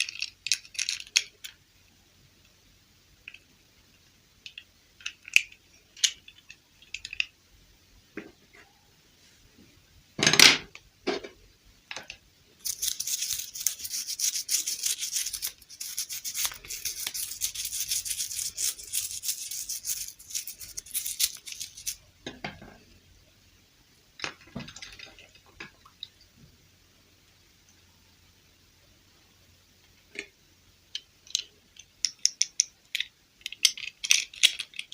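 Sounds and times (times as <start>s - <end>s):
crackly scratching or rubbing: 12.6s - 22.1s.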